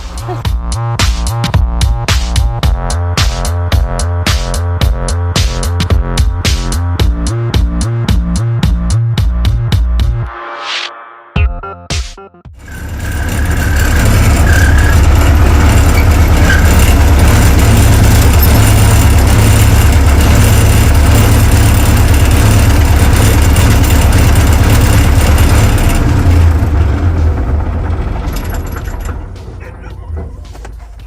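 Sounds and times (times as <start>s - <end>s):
tractor engine rumbling: 12.6s - 31.0s.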